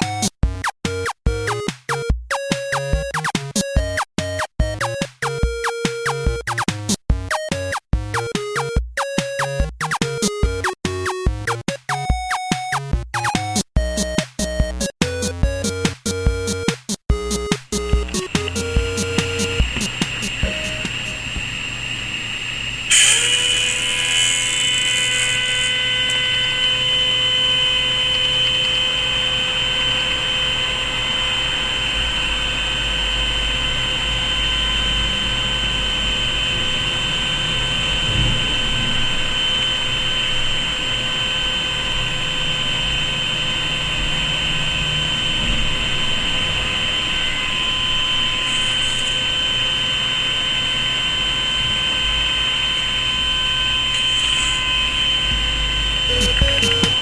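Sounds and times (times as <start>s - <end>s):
blower motor whine: 17.2s - 57.0s.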